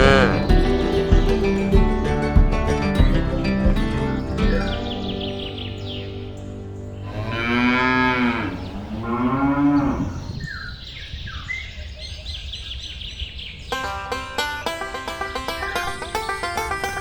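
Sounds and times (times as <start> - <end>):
cow mooing: 0.0 - 0.5, 7.0 - 10.3
music: 0.0 - 8.2, 13.8 - 17.0.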